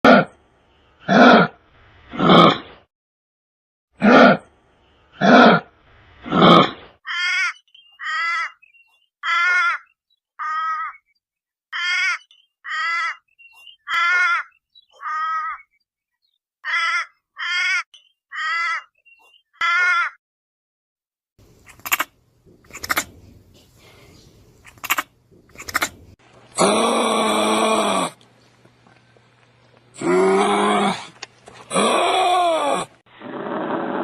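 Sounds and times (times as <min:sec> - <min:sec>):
kangaroo calling: 0:11.7 - 0:15.7, 0:24.6 - 0:26.2.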